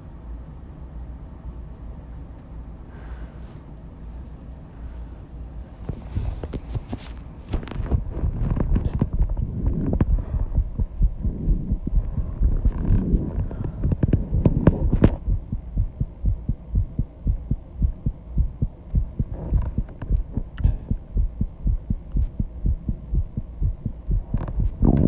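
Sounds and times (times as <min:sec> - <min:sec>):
heartbeat thuds: 0:07.6 - 0:25.0.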